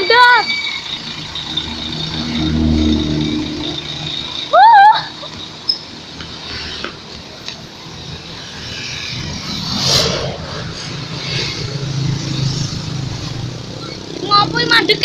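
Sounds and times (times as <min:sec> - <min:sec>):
engine rumble of traffic: 0:00.0 - 0:15.0
vehicle rushing past: 0:00.7 - 0:07.1, 0:07.9 - 0:14.6.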